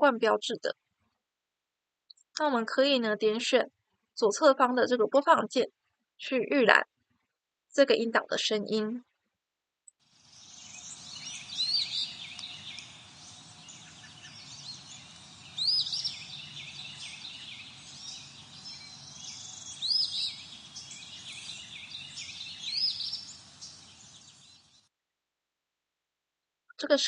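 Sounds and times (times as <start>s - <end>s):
background hiss: 10.1s - 24.8s
birds chirping and calling: 10.3s - 24.8s.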